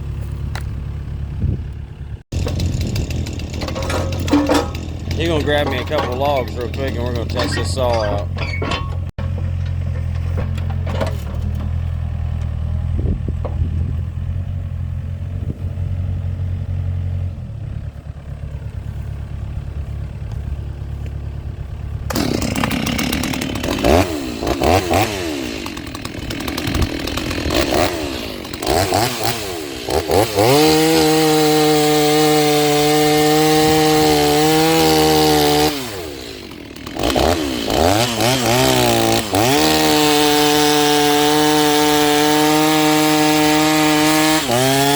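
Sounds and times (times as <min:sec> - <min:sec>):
chainsaw idling and revving: 0:01.8 - 0:08.4, 0:18.1 - 0:44.9.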